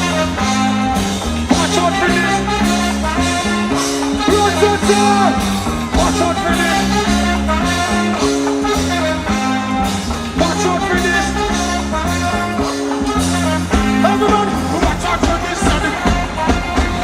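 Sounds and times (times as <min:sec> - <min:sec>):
heavy bass line: 0:00.0 - 0:17.0
reggae band music: 0:00.0 - 0:17.0
person singing: 0:10.3 - 0:17.0.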